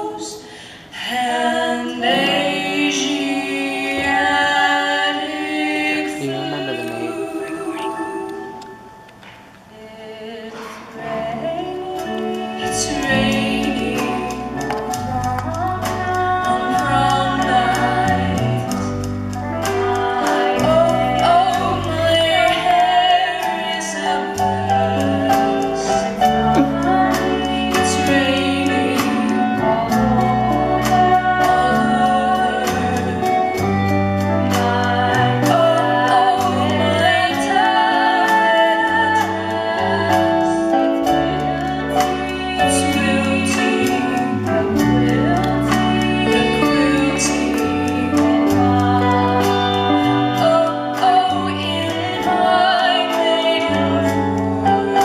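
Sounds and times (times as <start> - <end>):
musical accompaniment: 0.0 - 55.0
girl singing: 20.1 - 29.3.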